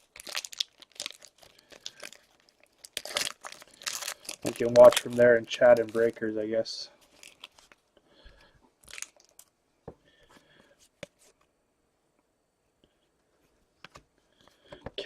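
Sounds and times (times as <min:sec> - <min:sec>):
trading cards and wrappers rustling: 0:00.0 - 0:07.9, 0:08.8 - 0:09.5.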